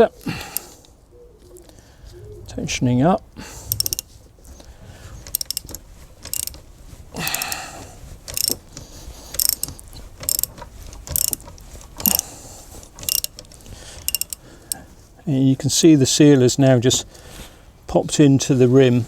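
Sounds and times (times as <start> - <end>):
wind-back tool clicking: 0.0 - 0.9, 3.2 - 14.8.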